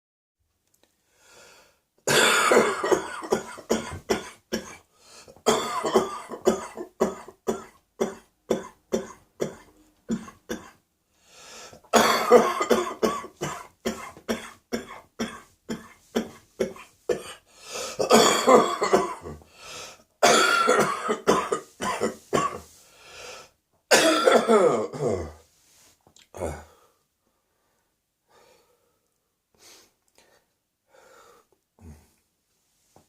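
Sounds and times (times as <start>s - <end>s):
person coughing: 2.1s - 4.8s, 5.4s - 10.8s, 11.9s - 19.4s, 20.2s - 22.7s, 23.9s - 25.4s.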